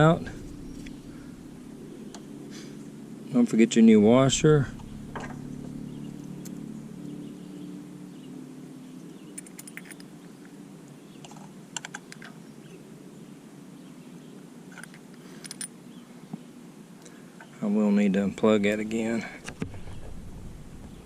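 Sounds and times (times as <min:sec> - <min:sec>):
low hum: 0:00.0 - 0:10.0, 0:18.8 - 0:21.0
small parts clicking and tapping: 0:09.4 - 0:10.6.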